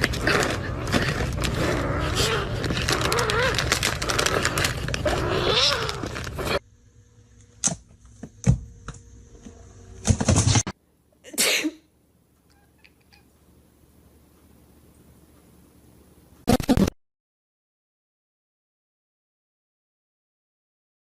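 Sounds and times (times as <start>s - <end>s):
cat meowing: 5.2s - 6.2s.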